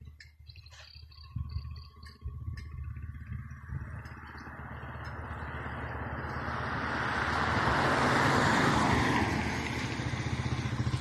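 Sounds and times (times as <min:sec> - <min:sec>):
low engine throb: 0:00.0 - 0:08.1, 0:09.8 - 0:11.0
vehicle driving past: 0:02.4 - 0:11.0.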